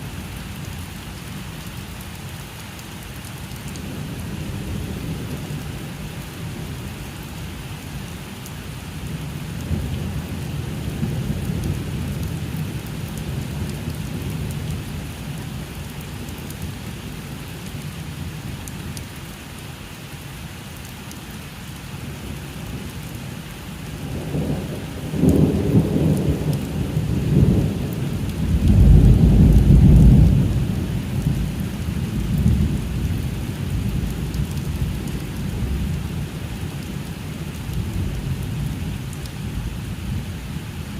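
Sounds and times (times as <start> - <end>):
steady rain: 0.0 - 40.9
thunder rumbling: 24.0 - 36.2.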